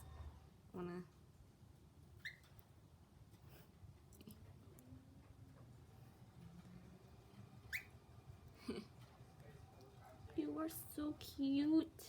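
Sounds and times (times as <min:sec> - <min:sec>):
small bird chirping: 0:02.2 - 0:02.6, 0:07.7 - 0:08.0.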